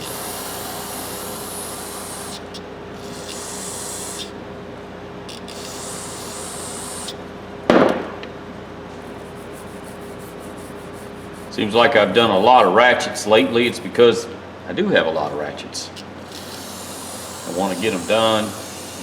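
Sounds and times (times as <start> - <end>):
loud thump: 7.7 - 8.2
hissing cleaning strokes: 16.0 - 19.0.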